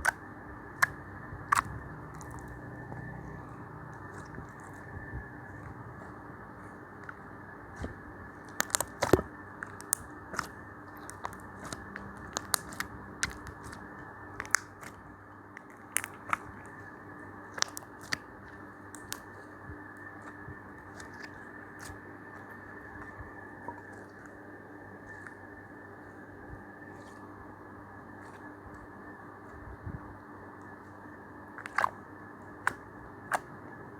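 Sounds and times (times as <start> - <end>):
slime clicking and popping: 0.8 - 2.6, 7.0 - 16.8, 17.5 - 18.3, 18.9 - 19.4, 31.6 - 32.0, 32.6 - 33.5.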